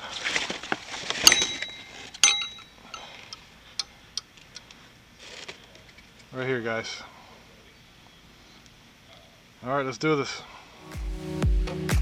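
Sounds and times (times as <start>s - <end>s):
metal parts clinking: 1.2s - 4.7s.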